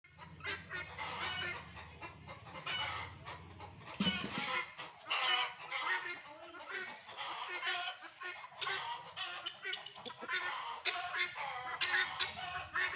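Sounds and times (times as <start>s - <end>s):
guineafowl calling: 3.9s - 12.9s.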